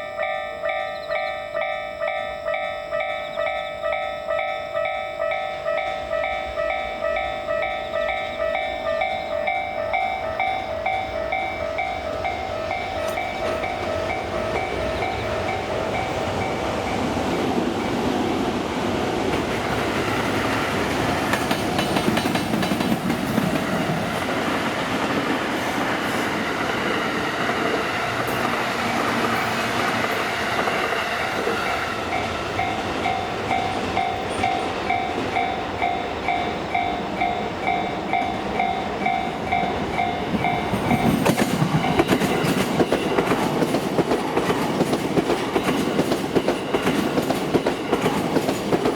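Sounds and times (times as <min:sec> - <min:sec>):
two-tone crossing warning bell: 0:00.0 - 0:48.9
train wheels clattering over rails: 0:12.7 - 0:36.0, 0:38.2 - 0:48.9.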